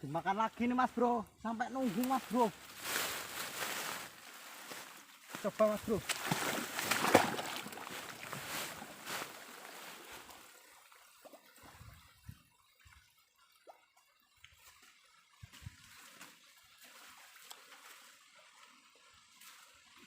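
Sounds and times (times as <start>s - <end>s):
water trickling: 0.1s - 20.0s
stream water splashing: 0.2s - 20.0s.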